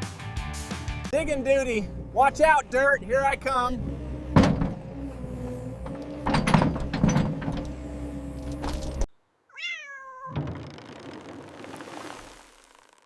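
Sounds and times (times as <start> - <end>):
excavator engine humming: 1.1 - 9.1
excavator digging thunks: 1.9 - 9.1
cat meowing: 9.5 - 10.4.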